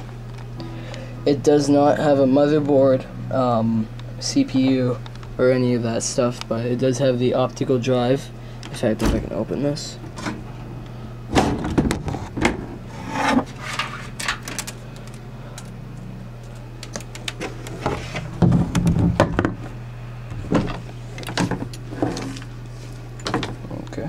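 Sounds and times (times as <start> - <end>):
steady low hum: 0.0 - 24.0
computer case knocks and clicks: 11.4 - 12.6, 18.4 - 19.6.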